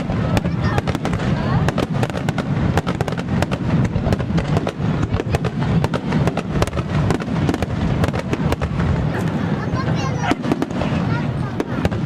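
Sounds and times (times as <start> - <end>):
booming shells rumble: 0.0 - 9.4
fireworks crackling: 0.0 - 12.0.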